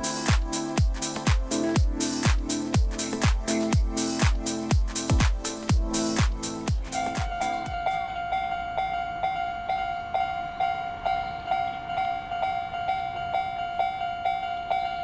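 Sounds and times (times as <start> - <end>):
level-crossing warning bell ringing: 6.8 - 15.0.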